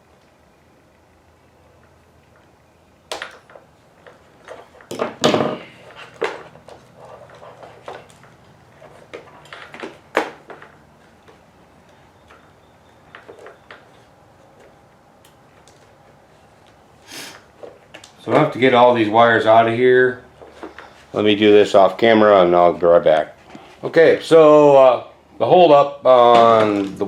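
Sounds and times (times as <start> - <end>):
scraping rustle: 5.6 - 10.0.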